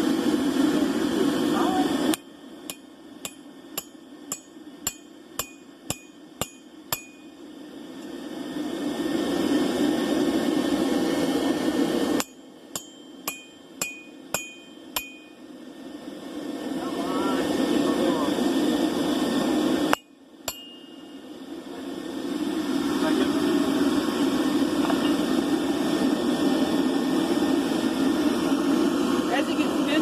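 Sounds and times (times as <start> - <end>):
steady rushing noise: 0.0 - 30.0
hammer striking metal on anvil: 2.1 - 7.4, 12.2 - 15.4, 19.9 - 21.2.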